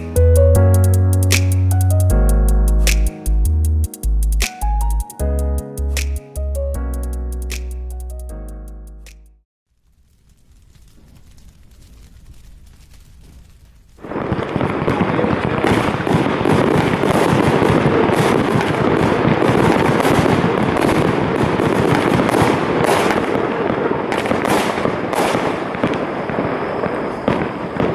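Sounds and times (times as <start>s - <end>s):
fireworks popping and crackling: 9.7s - 27.9s.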